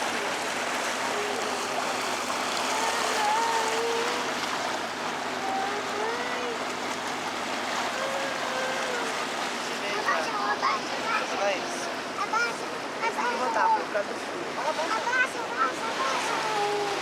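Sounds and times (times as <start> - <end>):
water rushing along a boat: 0.0 - 17.0
faint voices talking: 7.8 - 17.0.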